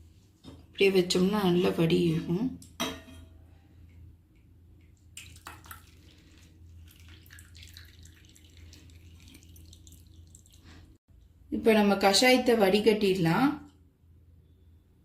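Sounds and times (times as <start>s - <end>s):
liquid dripping into a cup: 4.8s - 10.9s.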